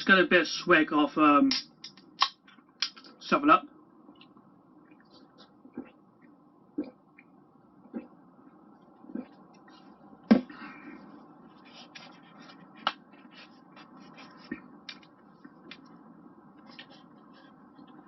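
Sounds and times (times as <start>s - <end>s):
person eating food: 4.1s - 16.0s.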